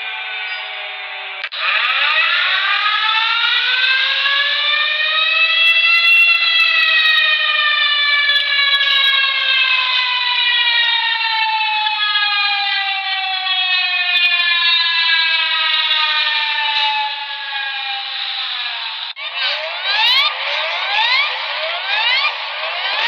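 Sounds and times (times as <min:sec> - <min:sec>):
siren winding up and down: 0:00.0 - 0:23.0.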